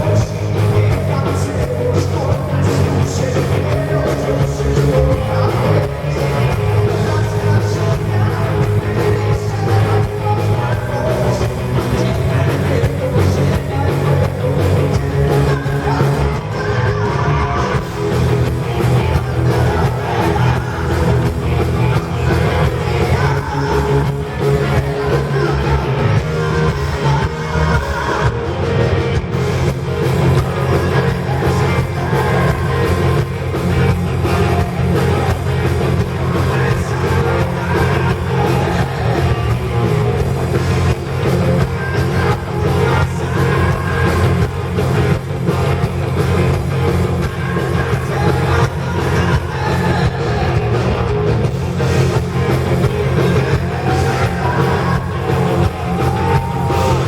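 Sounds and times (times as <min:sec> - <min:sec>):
live rock band playing: 0:00.0 - 0:57.0
person singing: 0:00.0 - 0:57.0.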